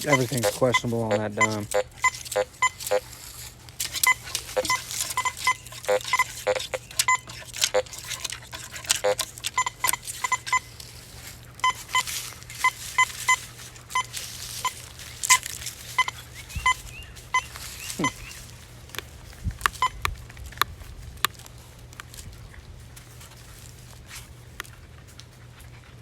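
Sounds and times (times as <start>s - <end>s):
metal detector beeps: 0.0s - 3.2s, 3.8s - 10.9s, 11.6s - 18.4s, 19.6s - 20.1s.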